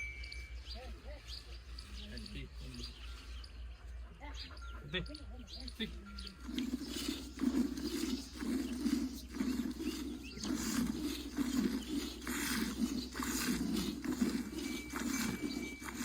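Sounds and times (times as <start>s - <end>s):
milk squirting into a pail: 6.4s - 16.0s.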